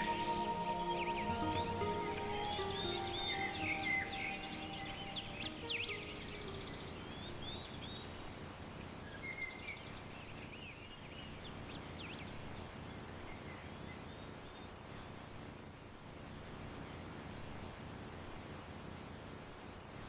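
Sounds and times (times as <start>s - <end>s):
held musical notes: 0.0s - 7.6s.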